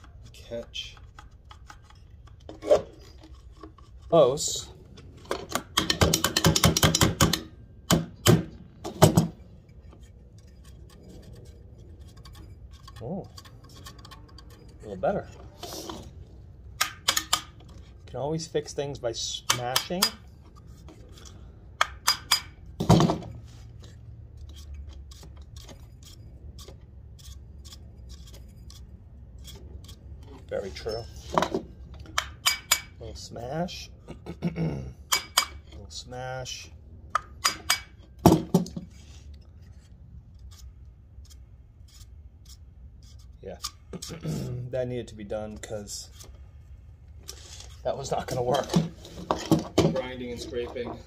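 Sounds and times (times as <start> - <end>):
tapping on metal parts: 5.0 - 11.0, 16.7 - 17.9, 19.4 - 23.4, 29.4 - 33.0, 35.0 - 35.8, 37.1 - 38.8.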